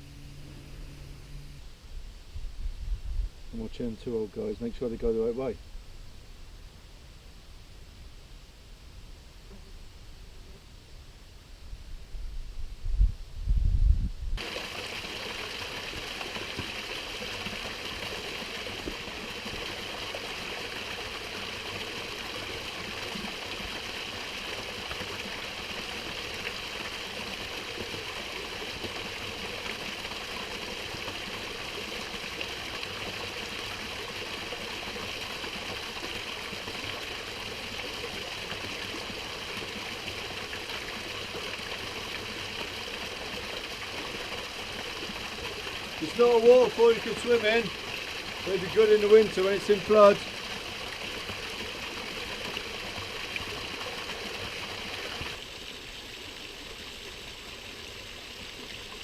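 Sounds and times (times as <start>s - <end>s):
small waterfall rushing: 14.4s - 59.0s.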